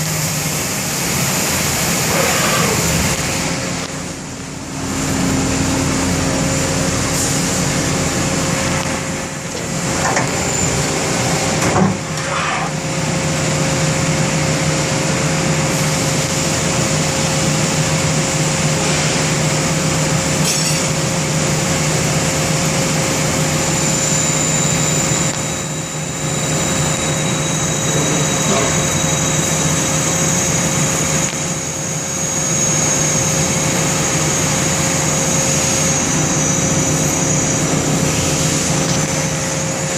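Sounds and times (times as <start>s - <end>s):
lathe running: 21.0s - 39.9s.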